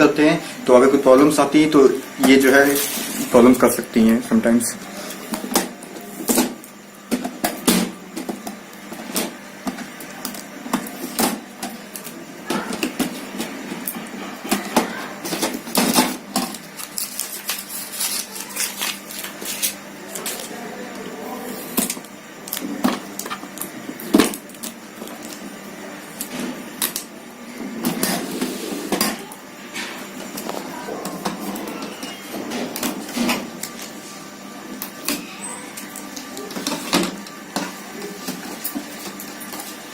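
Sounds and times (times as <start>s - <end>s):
packing tape being stripped: 16.4s - 20.6s.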